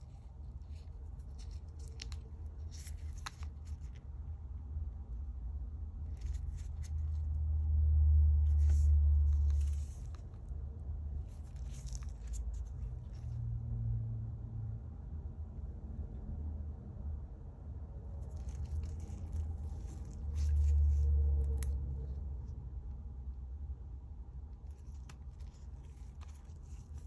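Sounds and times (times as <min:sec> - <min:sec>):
small parts clicking and scraping: 0:00.0 - 0:04.1, 0:08.4 - 0:10.5, 0:11.2 - 0:13.4, 0:18.2 - 0:22.2, 0:24.6 - 0:27.0.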